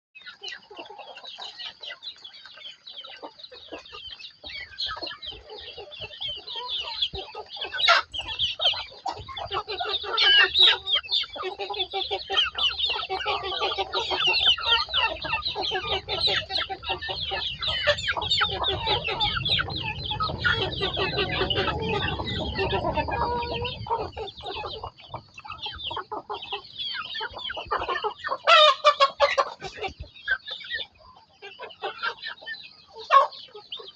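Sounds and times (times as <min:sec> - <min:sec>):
chicks cheeping: 0:00.2 - 0:33.9
hen clucking: 0:00.2 - 0:33.9
low rumble: 0:16.4 - 0:24.8.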